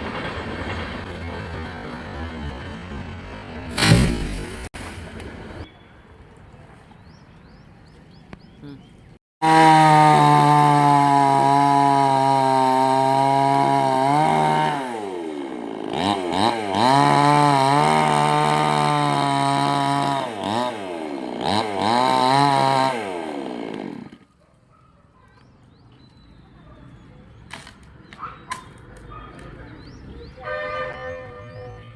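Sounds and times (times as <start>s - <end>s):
chainsaw revving: 9.4s - 24.3s.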